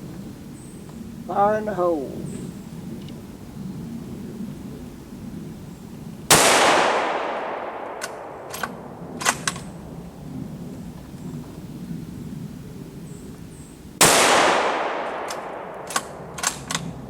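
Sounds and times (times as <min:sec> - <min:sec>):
rifle shot with echo: 0:06.3 - 0:09.8, 0:14.0 - 0:17.0.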